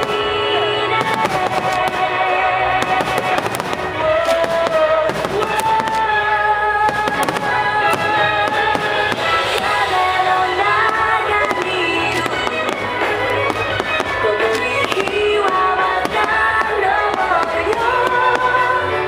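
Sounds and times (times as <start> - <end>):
fireworks bursting and crackling: 0.0 - 19.0
music with held melodic notes: 0.0 - 19.0.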